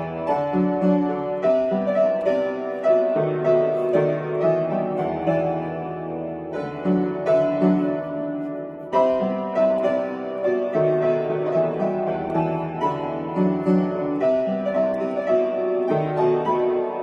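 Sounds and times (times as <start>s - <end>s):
solo piano playing: 0.0s - 17.0s.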